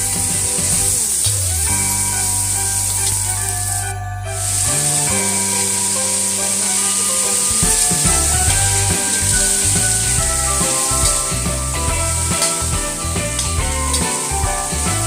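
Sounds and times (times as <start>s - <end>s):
background music: 0.0s - 15.0s
food sizzling in oil: 4.4s - 15.0s.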